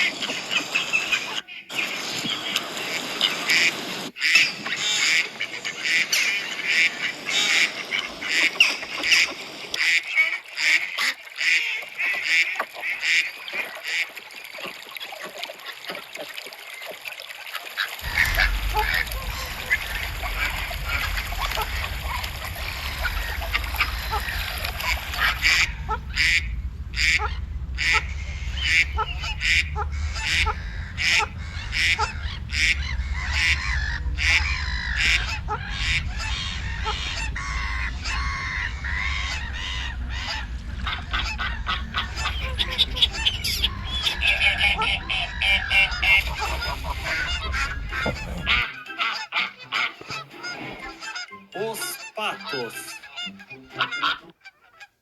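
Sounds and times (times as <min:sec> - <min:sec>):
geese honking: 0:00.0 - 0:16.5, 0:17.5 - 0:55.0
low rumble: 0:18.0 - 0:48.7.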